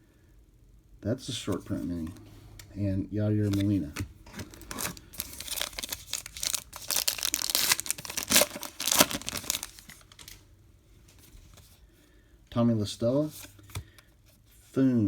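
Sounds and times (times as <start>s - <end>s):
wrapper tearing and crinkling: 3.4s - 10.4s.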